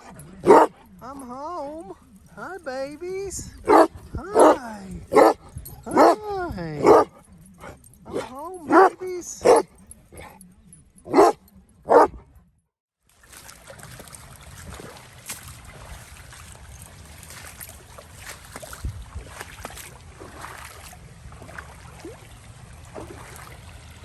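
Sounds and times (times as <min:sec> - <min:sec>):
drips and splashes: 0:13.0 - 0:24.0
water flowing across ground: 0:13.0 - 0:24.0.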